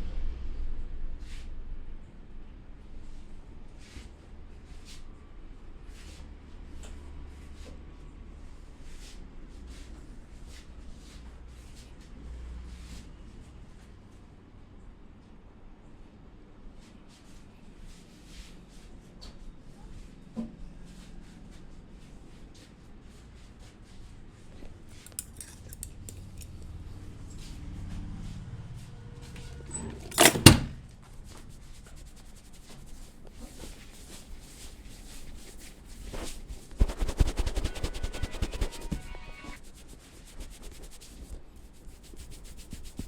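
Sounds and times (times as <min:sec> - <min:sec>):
fast rhythmic rubbing: 0:31.5 - 0:43.0.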